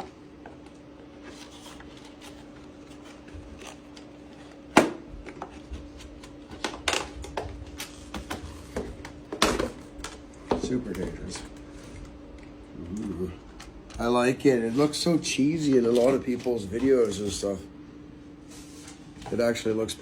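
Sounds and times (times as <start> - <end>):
box and packaging rustling: 1.0 - 12.1.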